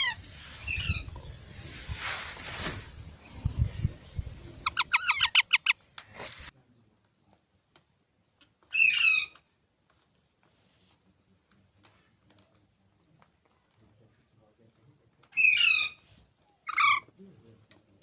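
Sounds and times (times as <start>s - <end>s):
baby parrots squawking: 0.0s - 1.1s, 4.6s - 5.8s, 8.7s - 9.4s, 15.4s - 16.0s, 16.7s - 17.1s.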